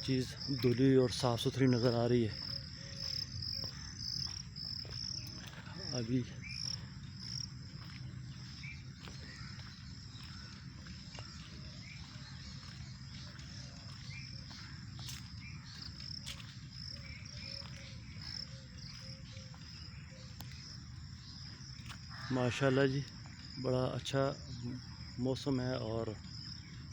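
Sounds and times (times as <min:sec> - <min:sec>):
insects trilling: 0:00.0 - 0:26.9
short bird calls: 0:08.6 - 0:15.9.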